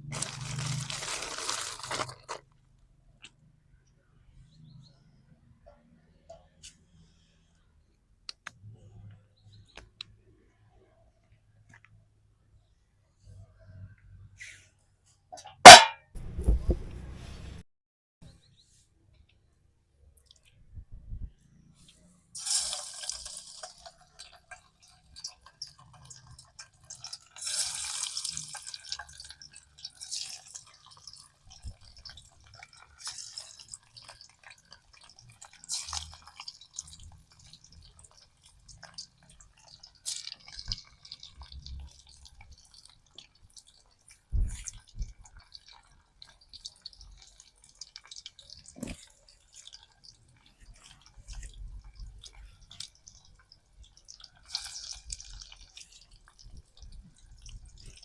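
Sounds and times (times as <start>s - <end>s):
water splashing and dripping: 22.4s - 58.0s.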